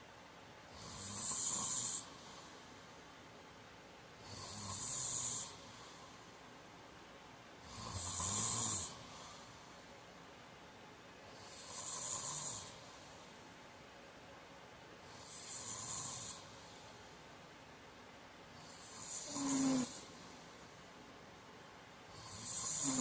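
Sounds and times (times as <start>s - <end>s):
man snoring: 0.8s - 2.2s, 4.2s - 5.7s, 7.6s - 9.4s, 11.4s - 12.8s, 15.2s - 16.5s, 18.6s - 20.2s, 22.1s - 23.0s.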